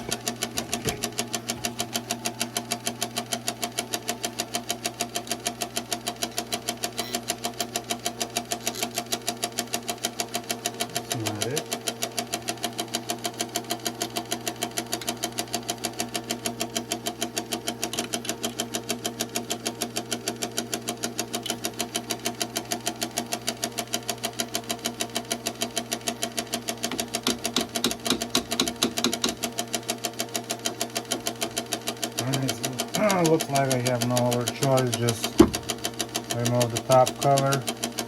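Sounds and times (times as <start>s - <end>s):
ice maker knocking: 0.0s - 7.0s, 10.7s - 19.5s, 25.9s - 29.9s, 32.0s - 37.7s
motor hum: 0.0s - 38.0s.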